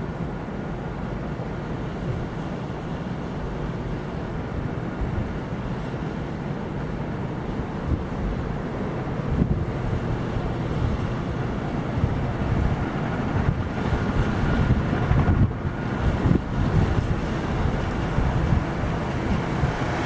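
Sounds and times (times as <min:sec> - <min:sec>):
ceiling fans rushing air: 0:00.0 - 0:20.0
wind buffeting microphone: 0:07.5 - 0:20.0.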